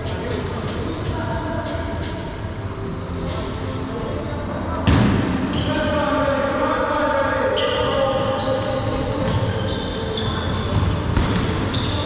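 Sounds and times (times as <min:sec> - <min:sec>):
shoes squeaking on floor: 0:07.5 - 0:12.0
balls bouncing on hard floor: 0:10.4 - 0:11.9.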